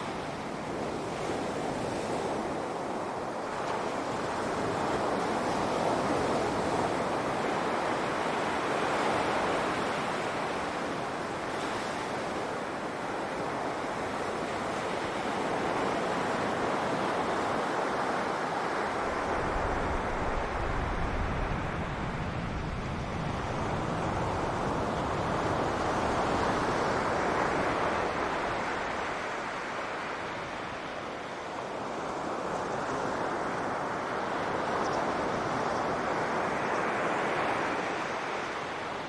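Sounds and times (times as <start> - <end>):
ocean surf washing onto beach: 0.0 - 39.0
wind buffeting microphone: 12.2 - 30.8.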